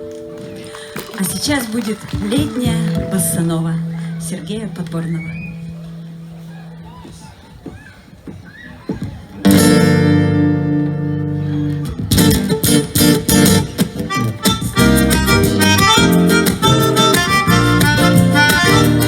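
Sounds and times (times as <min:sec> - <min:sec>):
acoustic guitar picking: 0:02.3 - 0:07.4, 0:09.4 - 0:19.0.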